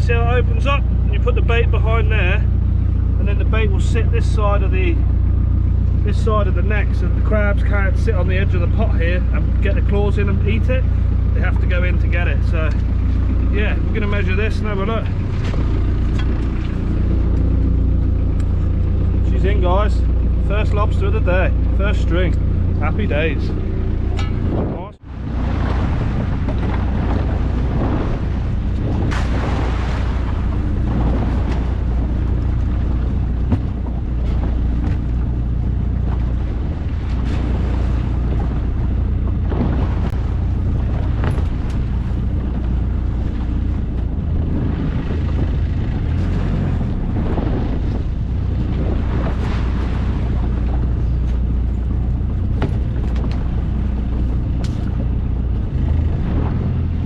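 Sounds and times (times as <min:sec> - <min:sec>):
boat engine running: 0:00.0 - 0:57.0
sea noise: 0:00.0 - 0:57.0
wind buffeting microphone: 0:00.0 - 0:57.0.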